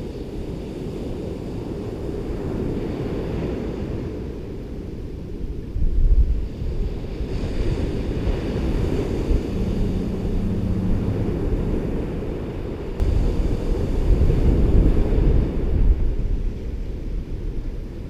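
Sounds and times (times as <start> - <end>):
ocean waves washing onto beach: 0.0 - 18.0
wind buffeting microphone: 0.0 - 18.0.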